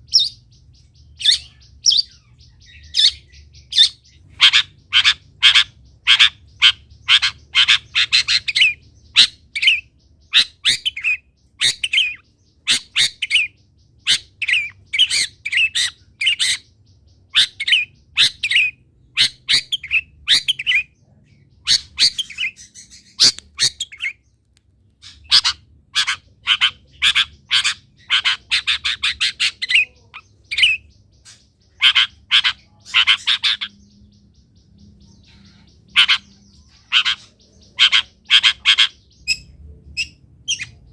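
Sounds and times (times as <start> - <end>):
bird singing harsh chattering notes: 0.0 - 40.9.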